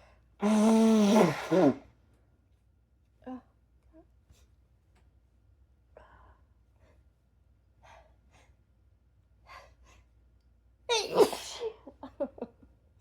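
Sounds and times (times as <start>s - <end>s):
woman sneezing: 0.4s - 1.8s, 10.9s - 11.8s.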